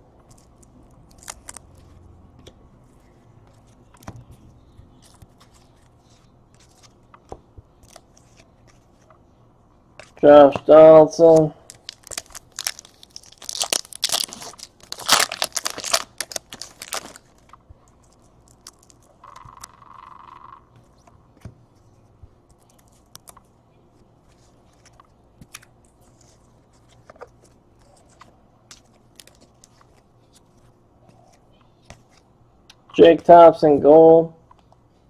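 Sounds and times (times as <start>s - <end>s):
foil wrapper tearing and crinkling: 1.1s - 1.7s, 11.7s - 17.5s
cards being handled: 2.9s - 9.2s, 10.0s - 32.3s.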